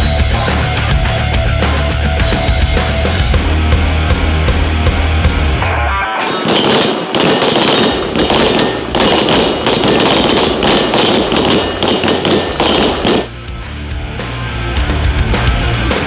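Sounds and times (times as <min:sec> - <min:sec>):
rapid gunshots: 0:06.2 - 0:13.4.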